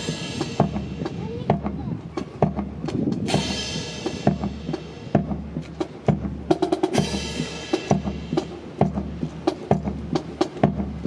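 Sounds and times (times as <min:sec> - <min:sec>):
cymbal crashes: 0:00.0 - 0:01.1
drum percussion music: 0:00.0 - 0:11.0.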